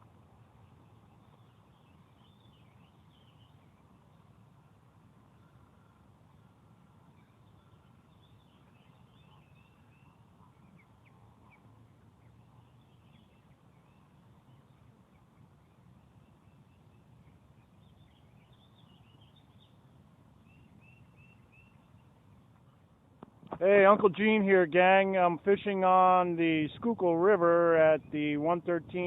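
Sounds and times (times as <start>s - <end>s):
bird chirps: 0.6s - 4.3s, 7.1s - 22.2s.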